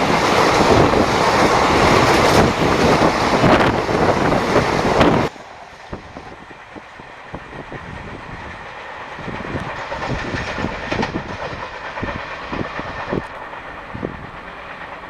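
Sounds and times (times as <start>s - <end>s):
train rushing noise: 0.0s - 15.0s
train wheels knocking on rail joints: 9.2s - 15.0s.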